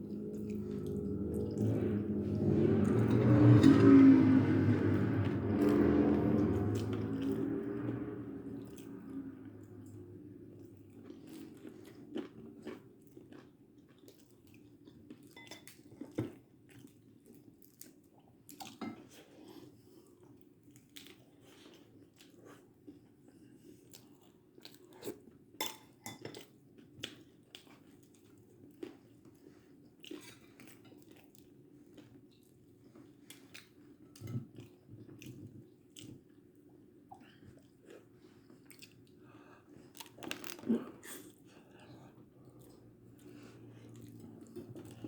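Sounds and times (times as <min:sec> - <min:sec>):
faint low hum: 0:00.0 - 0:14.6.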